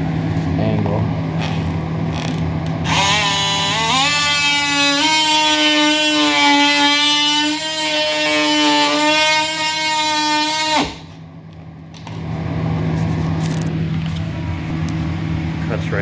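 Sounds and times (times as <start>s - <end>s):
steady noisy hum: 0.0s - 16.0s
oscillating tool cutting wood: 2.8s - 11.1s.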